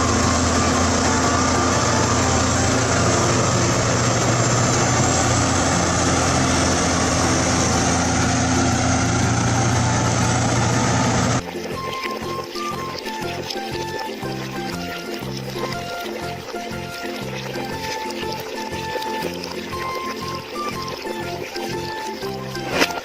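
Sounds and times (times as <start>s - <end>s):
bulldozer diesel engine running: 0.0s - 23.0s.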